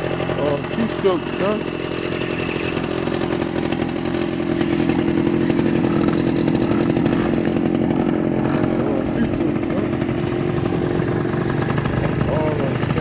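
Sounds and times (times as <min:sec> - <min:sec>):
two-stroke engine buzzing: 0:00.0 - 0:13.0.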